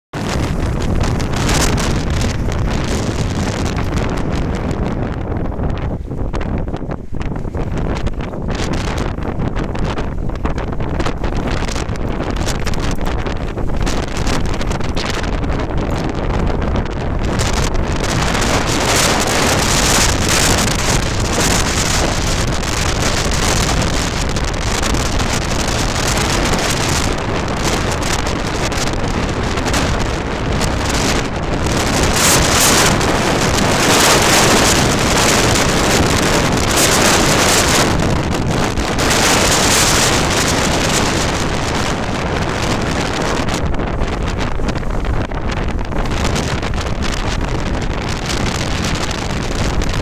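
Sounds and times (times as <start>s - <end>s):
gusting wind on microphone: 0.1s - 50.0s
tent fabric flapping: 0.1s - 50.0s.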